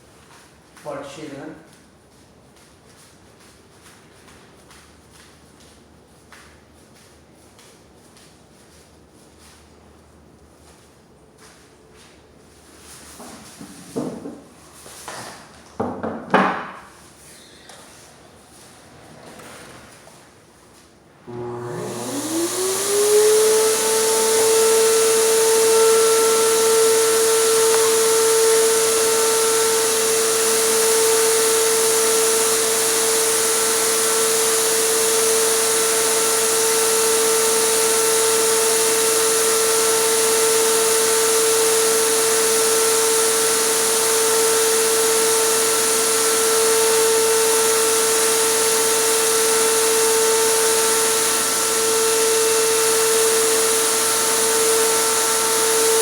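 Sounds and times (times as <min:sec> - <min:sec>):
air compressor motor whine: 0:21.2 - 0:56.0.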